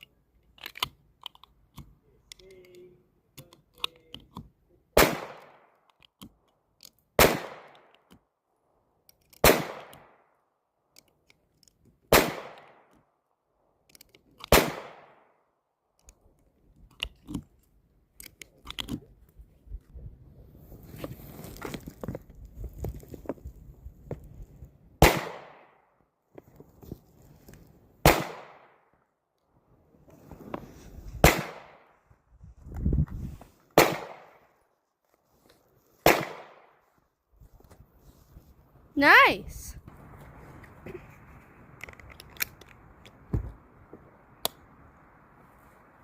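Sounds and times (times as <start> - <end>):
gunshots echoing: 5.0 - 5.7, 7.2 - 7.8, 9.4 - 10.1, 12.1 - 12.8, 14.5 - 15.2, 25.0 - 25.8, 28.0 - 28.8, 31.2 - 31.8, 33.8 - 34.4, 36.0 - 36.7.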